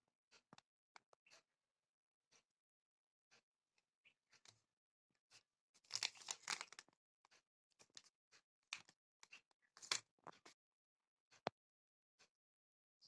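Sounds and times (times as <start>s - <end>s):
crinkling and rustling: 5.8s - 6.9s, 9.8s - 10.5s.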